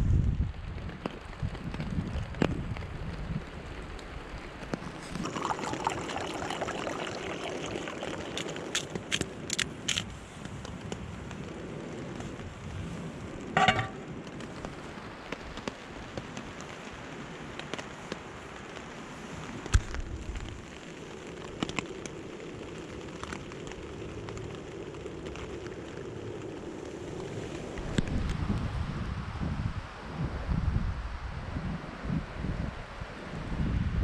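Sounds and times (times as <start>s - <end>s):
steady rain: 0.0s - 34.0s.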